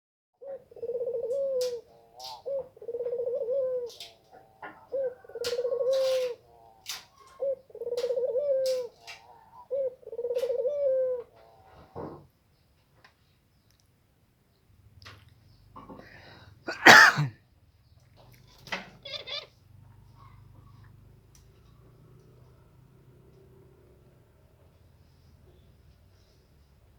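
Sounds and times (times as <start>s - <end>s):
dove cooing: 0.4s - 12.2s.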